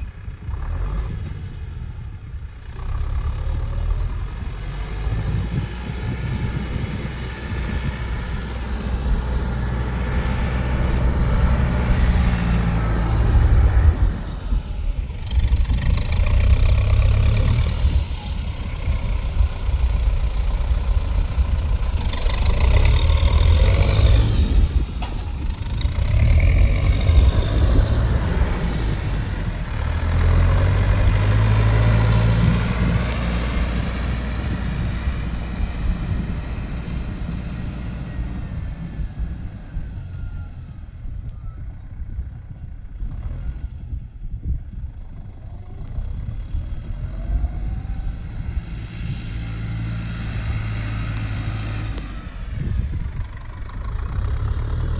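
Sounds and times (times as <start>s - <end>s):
heavy engine running: 0.0s - 54.9s.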